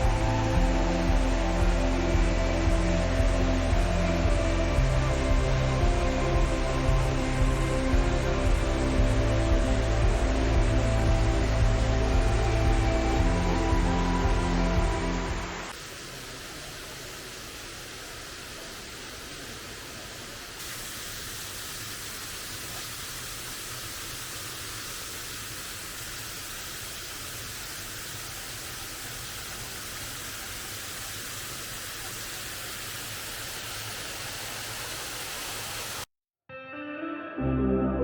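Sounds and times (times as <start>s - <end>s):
small waterfall rushing: 0.0s - 36.1s.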